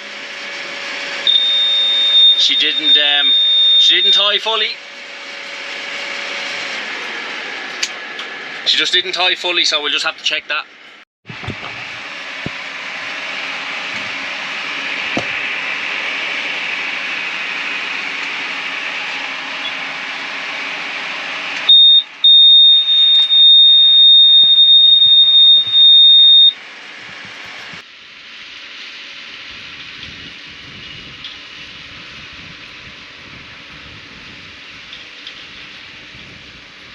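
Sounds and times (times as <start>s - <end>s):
high-pitched alarm beep: 1.3s - 4.4s, 21.7s - 26.6s
tractor and baler running: 11.3s - 21.7s, 25.2s - 36.9s.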